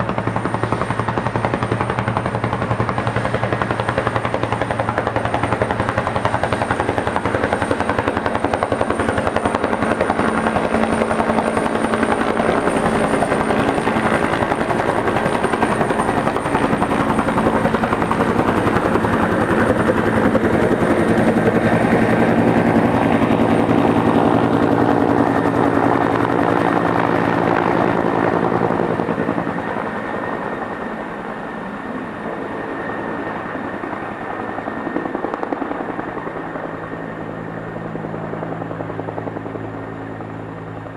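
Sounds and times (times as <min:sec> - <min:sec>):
helicopter rotor beating: 0:00.0 - 0:40.9
high turbine whine: 0:02.8 - 0:40.9.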